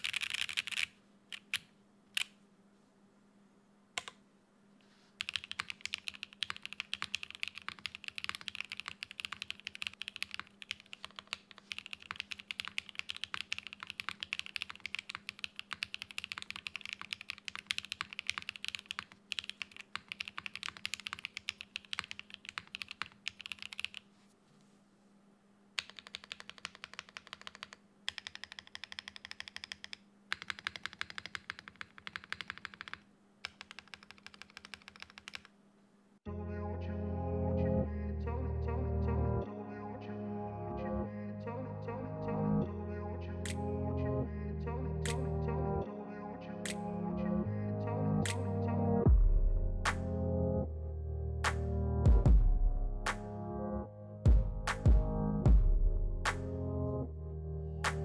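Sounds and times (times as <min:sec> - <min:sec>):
fast typing on mechanical keyboard: 0:00.0 - 0:02.3, 0:05.2 - 0:24.0, 0:25.8 - 0:35.6.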